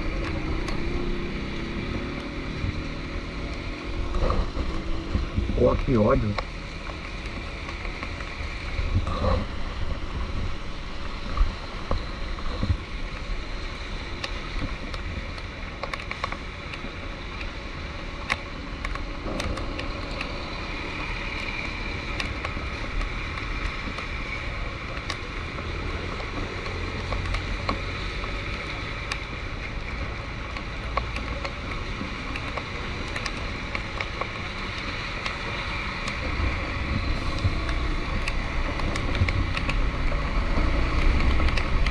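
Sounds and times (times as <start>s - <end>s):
engine and road rumble: 0.0s - 41.9s.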